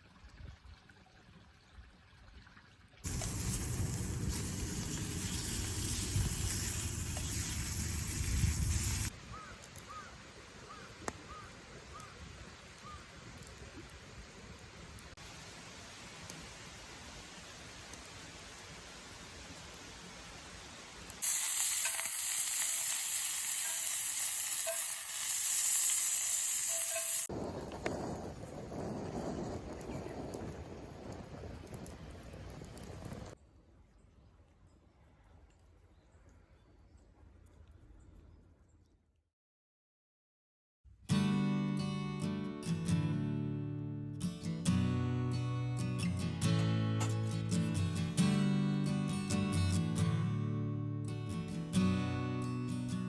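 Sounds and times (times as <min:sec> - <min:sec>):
food sizzling in a pan: 0:03.0 - 0:09.1, 0:21.2 - 0:27.3.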